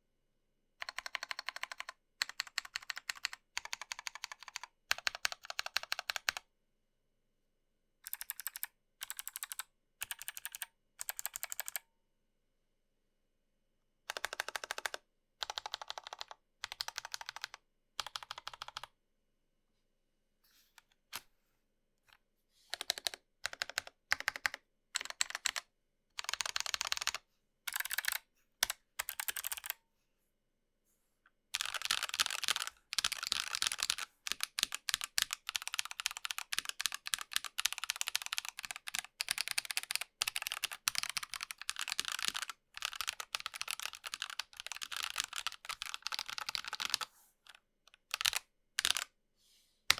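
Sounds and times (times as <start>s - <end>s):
fast typing on mechanical keyboard: 0.8s - 6.4s, 8.1s - 11.8s, 14.1s - 18.9s, 22.7s - 25.6s, 26.2s - 29.8s, 31.6s - 47.1s, 47.9s - 49.1s.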